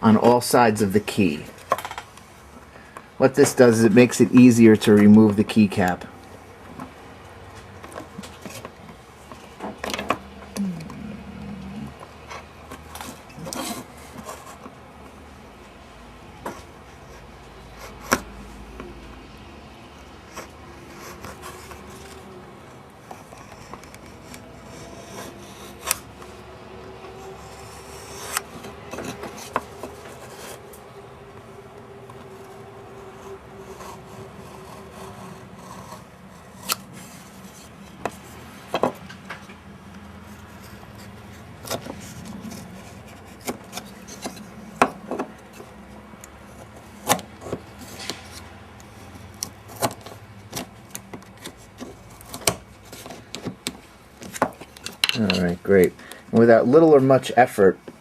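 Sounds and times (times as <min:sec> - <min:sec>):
utility knife scraping plastic: 0:10.8 - 0:14.8, 0:20.0 - 0:30.8, 0:32.0 - 0:38.6, 0:40.2 - 0:56.1.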